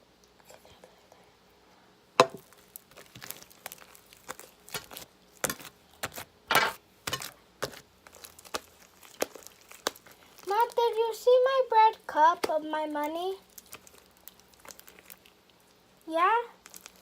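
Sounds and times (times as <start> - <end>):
slime sticky clicks and squelches: 7.1 - 10.8, 12.4 - 15.7, 16.6 - 17.0.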